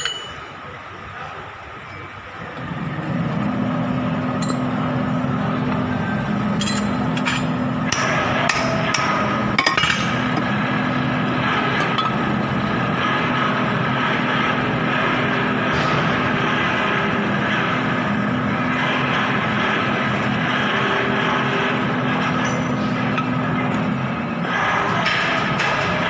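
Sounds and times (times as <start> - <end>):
hammer striking metal: 0.0 - 0.4
steady machine hum: 0.0 - 26.0.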